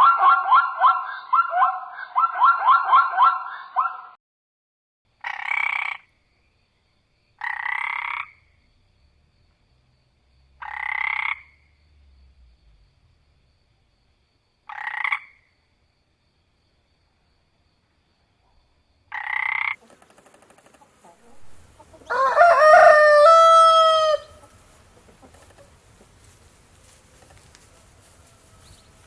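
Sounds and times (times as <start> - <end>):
animal call: 0.0 - 4.2, 19.1 - 25.7.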